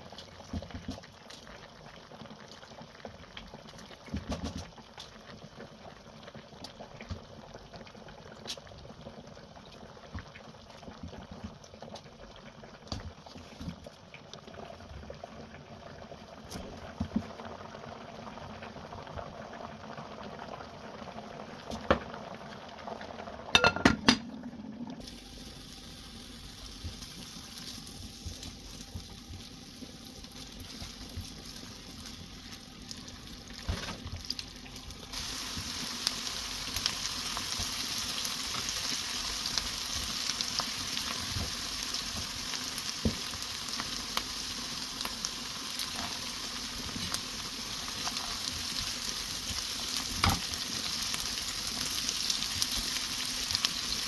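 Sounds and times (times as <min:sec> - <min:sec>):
food sizzling in a pan: 0:25.0 - 0:54.0.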